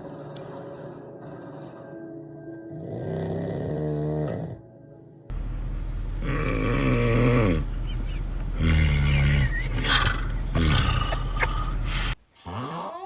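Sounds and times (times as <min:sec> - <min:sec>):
pet snoring loudly: 0:02.7 - 0:04.6, 0:06.2 - 0:07.7, 0:08.6 - 0:13.0.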